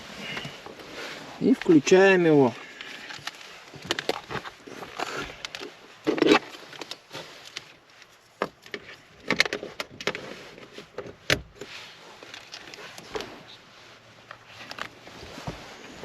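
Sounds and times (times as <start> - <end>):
equipment handling clicks and knocks: 2.8 - 13.3.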